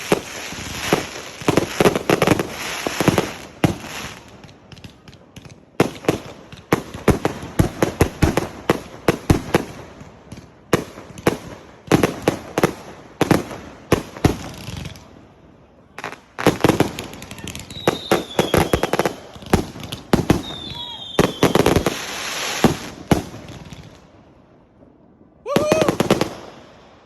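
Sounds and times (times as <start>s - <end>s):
fireworks bangs and crackles: 0.0s - 27.0s
faint falling firework whistle: 17.3s - 18.9s, 20.4s - 21.8s.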